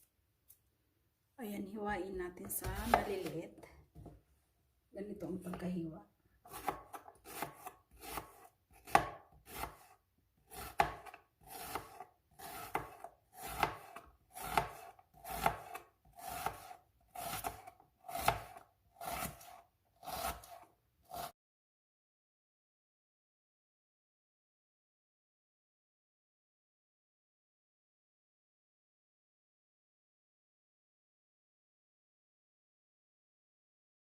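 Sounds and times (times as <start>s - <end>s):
knife chopping onion: 2.4s - 4.1s, 6.4s - 21.3s.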